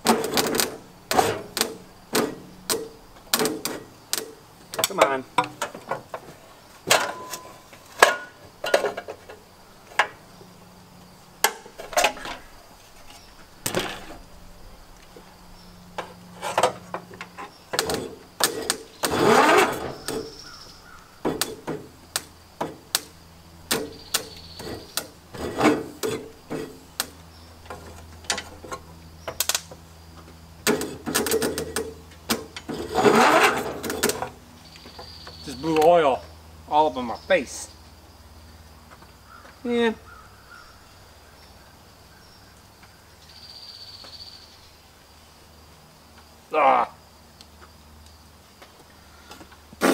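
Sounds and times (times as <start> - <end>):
metal scraping: 0.0 - 10.2, 16.0 - 21.9, 23.7 - 27.0, 30.6 - 34.4.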